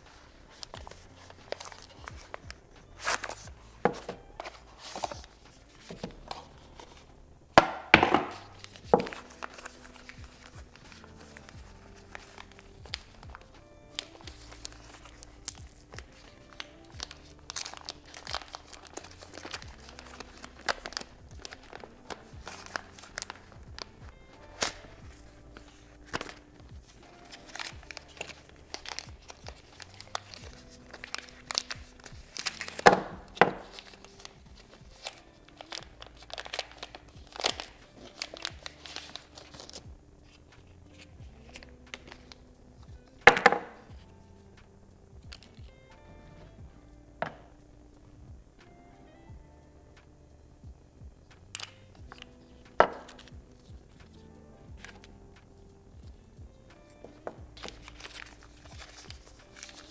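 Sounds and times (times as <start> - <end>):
wrapping crinkling and tearing: 0.0 - 7.2, 8.2 - 44.5, 51.3 - 59.9
background music: 0.0 - 59.9.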